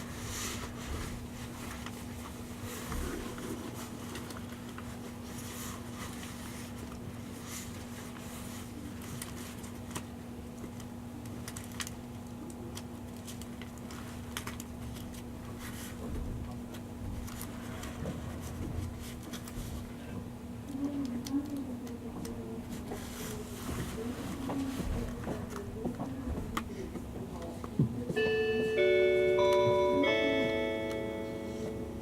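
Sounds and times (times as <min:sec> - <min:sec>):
train cabin hum: 0:15.9 - 0:32.0.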